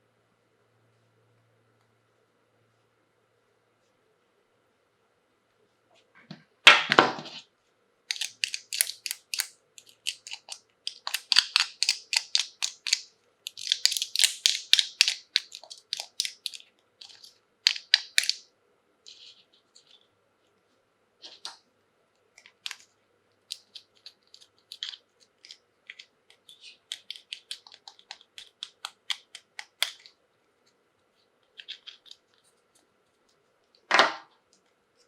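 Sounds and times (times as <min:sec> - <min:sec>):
plastic packaging crinkling: 0:08.1 - 0:18.4.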